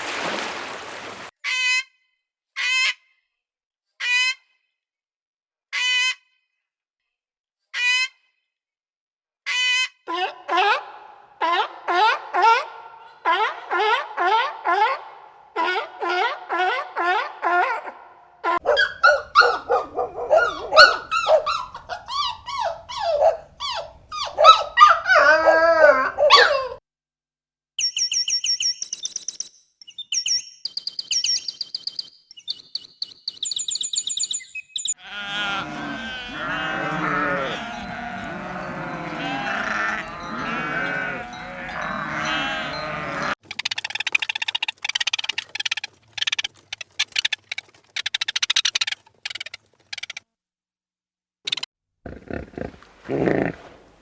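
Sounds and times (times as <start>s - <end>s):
group of animals calling: 10.1s - 26.8s, 35.0s - 43.4s
very high chirping: 27.8s - 35.0s
animal calls bending in pitch: 35.0s - 43.4s.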